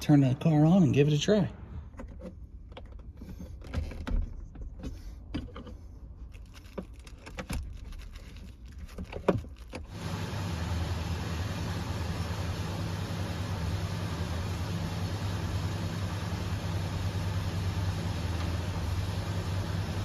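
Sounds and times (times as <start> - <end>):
car engine starting and idling: 9.8 - 20.0.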